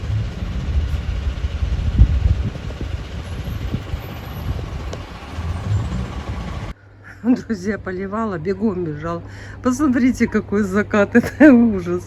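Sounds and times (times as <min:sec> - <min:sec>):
street traffic rumble: 0:00.0 - 0:06.8.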